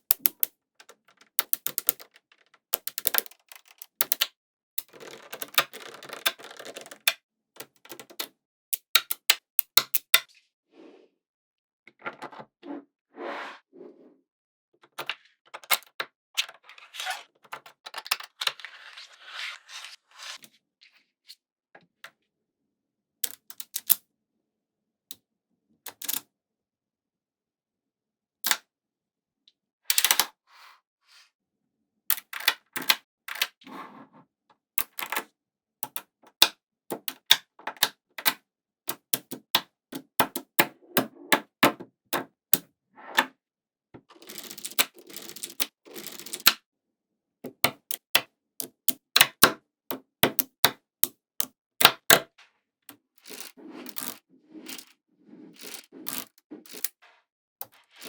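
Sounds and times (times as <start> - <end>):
magnetic balls clicking together: 0.1 - 0.5, 1.4 - 2.2, 2.8 - 4.2.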